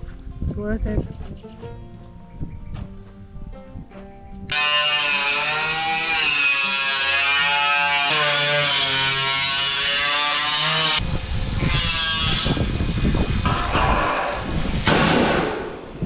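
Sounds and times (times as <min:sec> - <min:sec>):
power drill motor driving screws: 0:04.5 - 0:10.8
rough low rumbling: 0:11.0 - 0:16.0.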